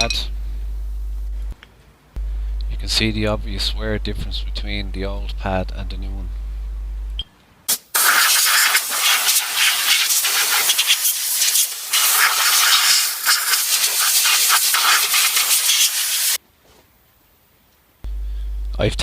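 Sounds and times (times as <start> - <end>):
air blow gun hissing: 7.7 - 16.4.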